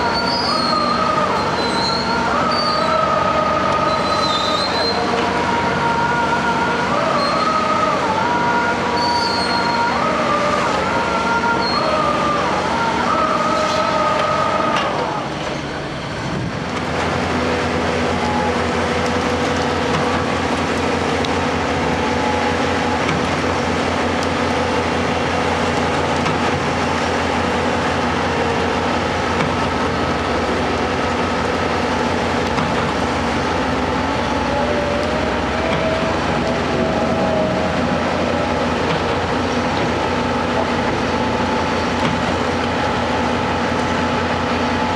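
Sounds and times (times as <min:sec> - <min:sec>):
high wavering metallic squeal: 0:00.0 - 0:15.1
heavy diesel machinery running: 0:00.0 - 0:44.9.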